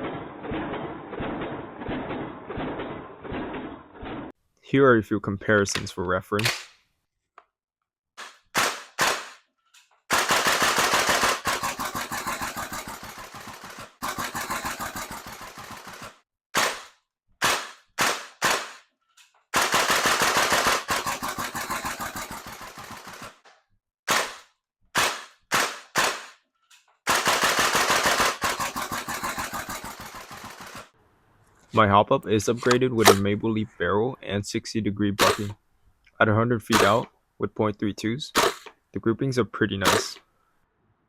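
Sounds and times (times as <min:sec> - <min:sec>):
airsoft rifle full-auto fire: 0:08.5 - 0:09.4, 0:10.1 - 0:18.8, 0:19.6 - 0:23.4, 0:25.0 - 0:26.4, 0:27.1 - 0:31.0, 0:38.4 - 0:38.7, 0:39.9 - 0:40.1
airsoft rifle semi-auto shots: 0:08.5 - 0:09.4, 0:10.1 - 0:18.8, 0:19.6 - 0:23.4, 0:25.0 - 0:26.4, 0:27.1 - 0:30.9, 0:32.6 - 0:33.3, 0:35.2 - 0:35.5, 0:36.7 - 0:37.0, 0:38.4 - 0:38.7, 0:39.8 - 0:40.2.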